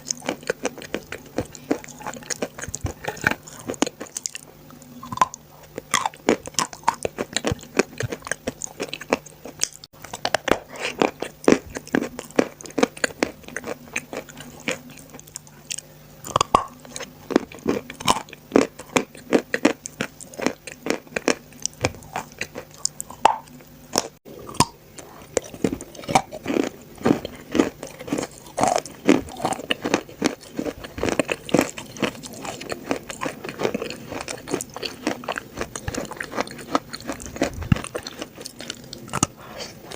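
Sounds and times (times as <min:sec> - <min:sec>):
chalk being chewed: 0:05.1 - 0:15.8, 0:25.0 - 0:39.9.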